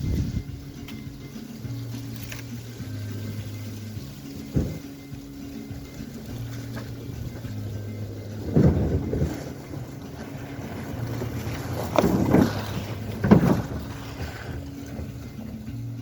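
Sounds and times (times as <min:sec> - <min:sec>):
background music: 0:00.0 - 0:16.0
wind rumbling on microphone: 0:00.0 - 0:16.0.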